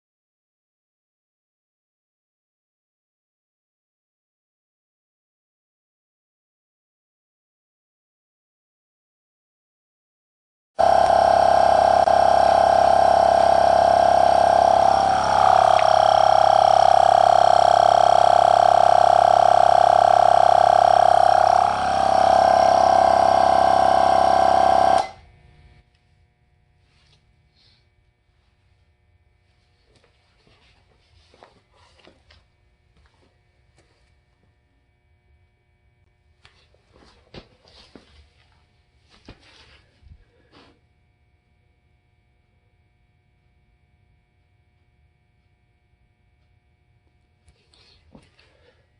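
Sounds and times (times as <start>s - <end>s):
air compressor running: 10.8s - 25.3s, 39.0s - 40.8s, 47.5s - 48.9s
low steady hum: 10.8s - 48.9s.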